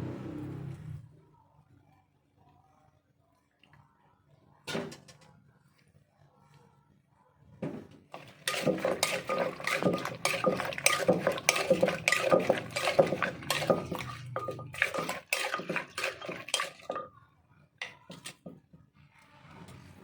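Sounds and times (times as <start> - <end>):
utensils clinking against dishes: 8.2 - 17.2.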